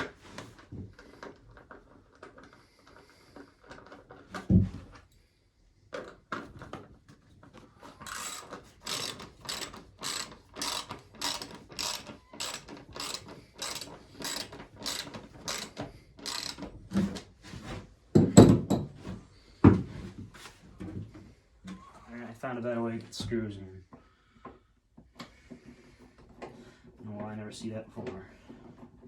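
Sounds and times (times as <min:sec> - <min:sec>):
ratchet wrench clicking: 0:08.0 - 0:16.7
knock and clatter: 0:18.2 - 0:19.9.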